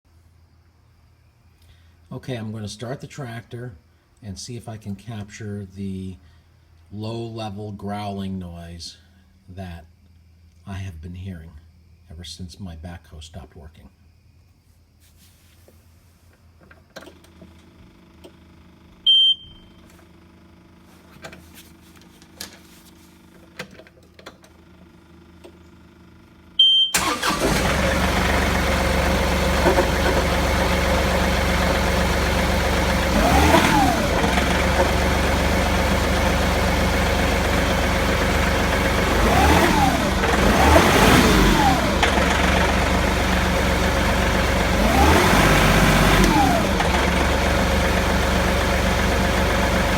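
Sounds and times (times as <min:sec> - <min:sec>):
short beeps: 0:19.1 - 0:19.7, 0:26.6 - 0:27.0
diesel tractor engine running: 0:24.5 - 0:49.9.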